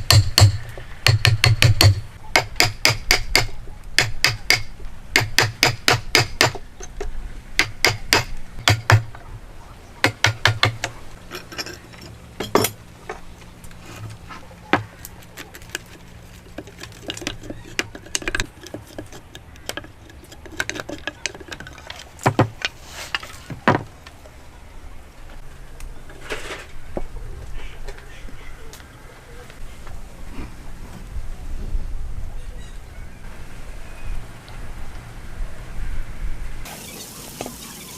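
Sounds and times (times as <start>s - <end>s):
tools knocking and clicking: 16.6s - 22.7s.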